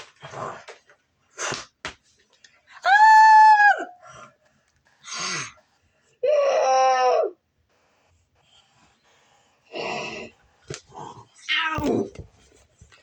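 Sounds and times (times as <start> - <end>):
boy wailing cry: 6.2 - 7.4.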